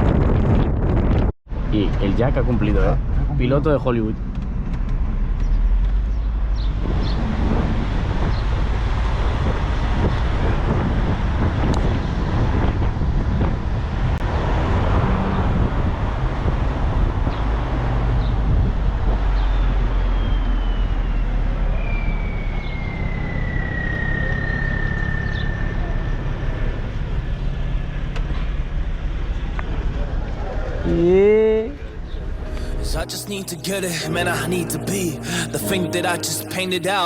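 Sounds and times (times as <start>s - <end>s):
car engine and tyre noise: 0.0s - 37.0s
high whine falling in pitch: 19.2s - 27.0s.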